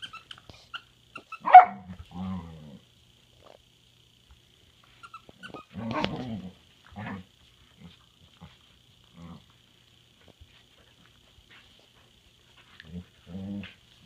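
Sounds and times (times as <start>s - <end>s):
puppy growling: 1.5s - 2.9s, 5.5s - 8.5s, 12.8s - 13.8s.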